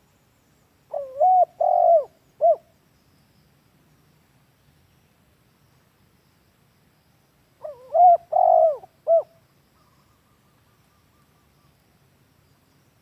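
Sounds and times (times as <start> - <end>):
dove cooing: 0.9 - 2.7, 7.6 - 9.4.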